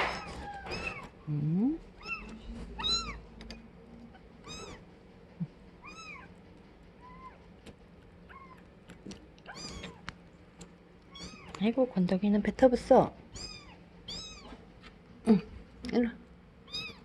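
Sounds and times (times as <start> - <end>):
kitten mewing: 2.0 - 3.2, 5.4 - 6.3, 9.4 - 10.0, 13.3 - 14.6.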